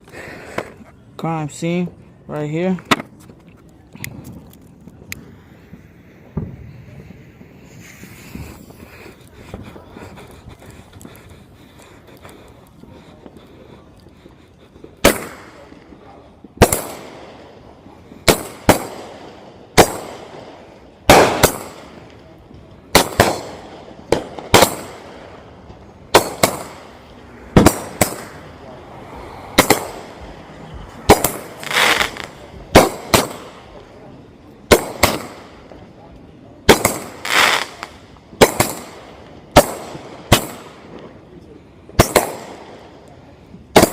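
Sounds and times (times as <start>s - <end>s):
firework crackling: 3.8s - 43.9s
firework shots with echo: 5.2s - 9.8s, 14.8s - 28.8s, 29.5s - 43.9s.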